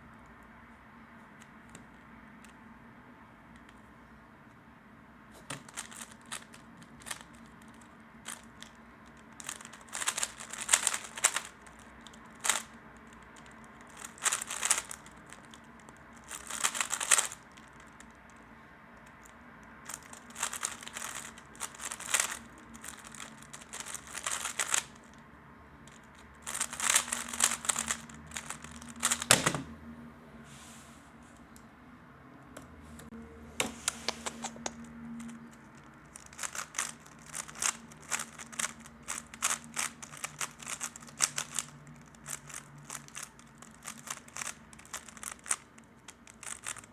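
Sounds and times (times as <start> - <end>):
puzzle cube clicking and rattling: 5.5 - 18.4, 19.0 - 25.2, 25.9 - 29.5, 34.0 - 46.9.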